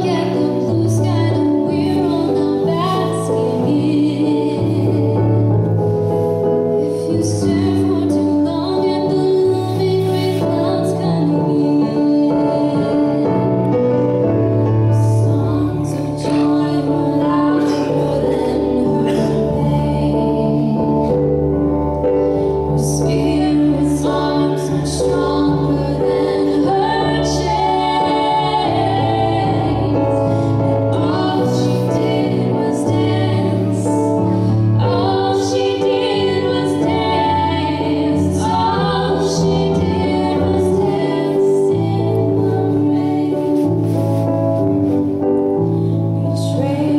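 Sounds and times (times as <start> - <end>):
woman singing: 0.0 - 5.6, 7.0 - 21.4, 22.7 - 44.2, 46.3 - 46.9
instrumental accompaniment: 0.0 - 46.9.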